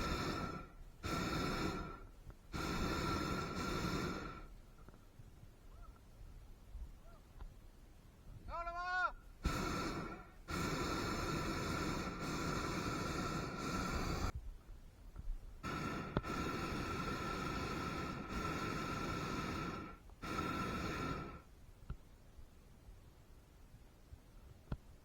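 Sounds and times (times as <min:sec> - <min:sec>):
propane burner roaring: 0:00.0 - 0:04.5, 0:09.4 - 0:14.4, 0:15.6 - 0:21.4.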